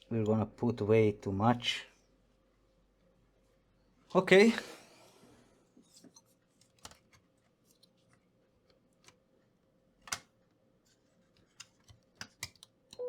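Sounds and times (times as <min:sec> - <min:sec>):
small tools clicking and tapping: 0:11.4 - 0:13.0.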